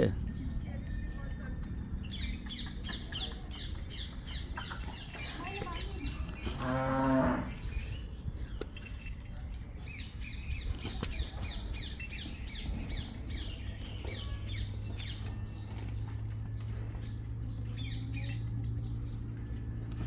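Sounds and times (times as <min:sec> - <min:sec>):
small birds chirping: 0:00.0 - 0:20.0
cow mooing: 0:06.5 - 0:07.6.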